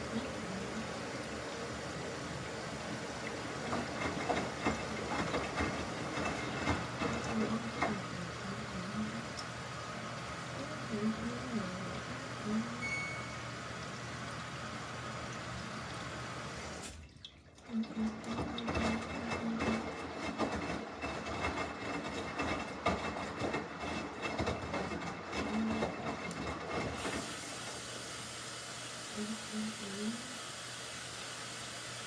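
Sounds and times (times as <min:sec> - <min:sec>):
washing machine water rushing: 0:00.0 - 0:32.0
water sloshing in drum: 0:02.4 - 0:08.6, 0:16.8 - 0:27.8.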